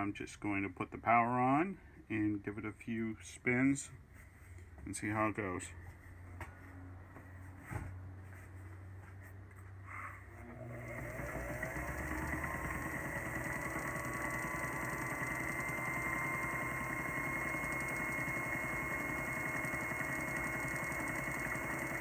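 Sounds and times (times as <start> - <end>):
lathe motor whining: 10.4 - 22.0.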